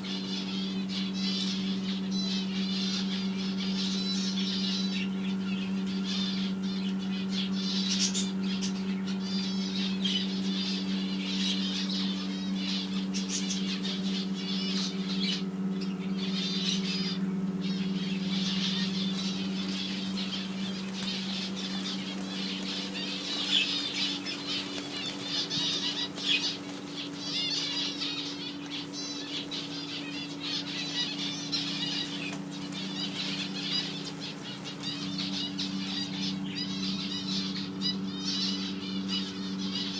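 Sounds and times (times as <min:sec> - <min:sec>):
small birds chirping: 0:00.0 - 0:39.9
steady low hum: 0:00.0 - 0:39.9
wing flutters and flaps: 0:10.0 - 0:39.9.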